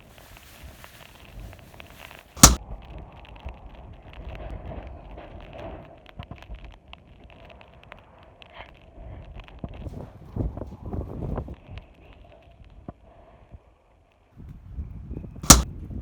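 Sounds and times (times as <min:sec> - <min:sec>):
loud bang: 0:02.4 - 0:02.6, 0:15.4 - 0:15.6.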